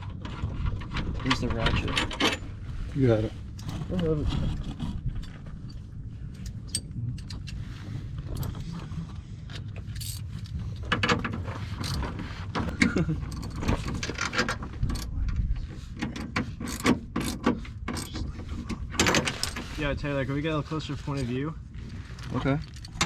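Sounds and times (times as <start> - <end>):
low steady rumble: 0.0 - 23.0
hand ratchet clicking: 11.8 - 12.0, 16.7 - 18.1.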